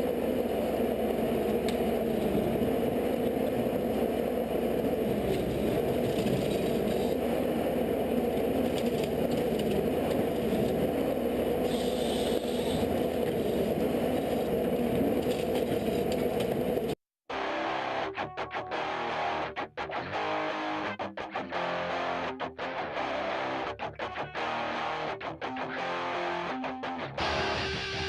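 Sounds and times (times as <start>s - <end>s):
machinery engine drone: 0.0s - 17.0s.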